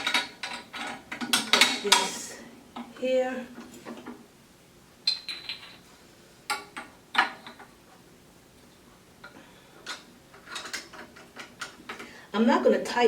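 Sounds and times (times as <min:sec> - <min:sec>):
metal parts clinking: 0:05.1 - 0:05.8.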